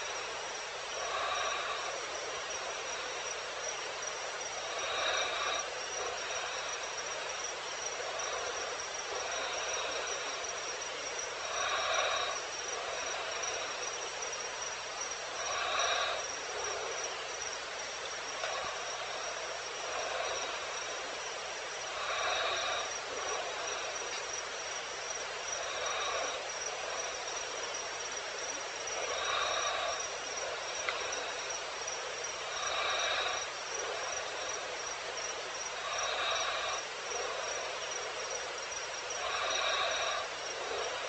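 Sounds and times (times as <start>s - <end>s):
repeating insect call: 0.0s - 41.0s.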